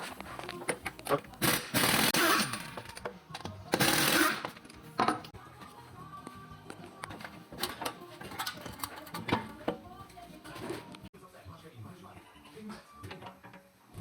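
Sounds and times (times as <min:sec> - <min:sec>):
power tool bursts: 0:01.4 - 0:02.8, 0:03.8 - 0:04.5.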